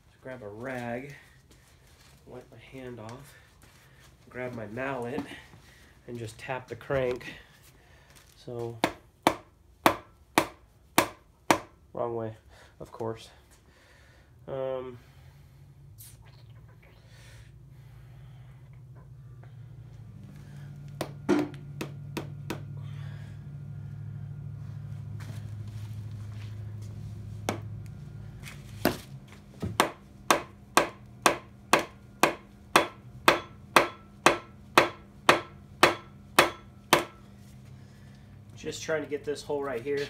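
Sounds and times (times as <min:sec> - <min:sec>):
mallet striking metal crankshaft: 0:29.8 - 0:37.2.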